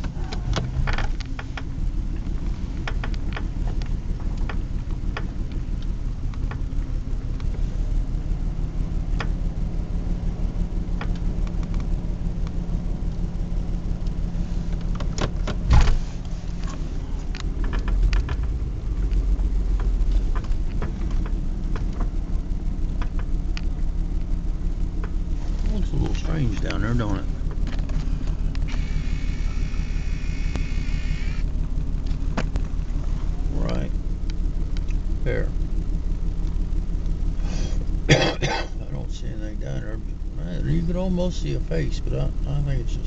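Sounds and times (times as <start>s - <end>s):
clicks and rattles: 0.0s - 6.7s, 14.0s - 22.2s, 26.1s - 28.9s
car engine hum: 0.0s - 43.0s
loud thump: 15.5s - 16.0s.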